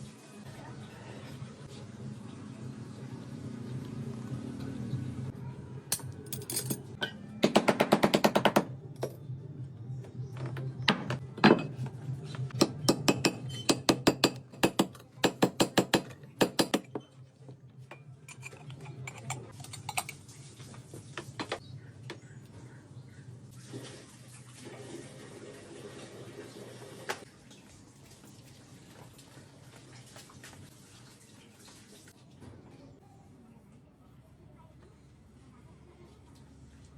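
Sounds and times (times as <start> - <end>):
hard objects clinking together: 5.9 - 7.1.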